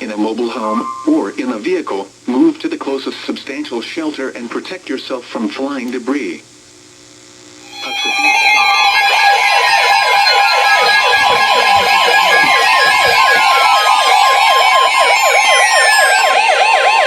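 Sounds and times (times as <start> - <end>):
steady high tone: 0.0 - 1.7, 7.6 - 16.6
fast warbling siren: 0.4 - 1.4, 7.6 - 17.0
weather radio warning alarms: 0.4 - 1.4, 7.7 - 17.0.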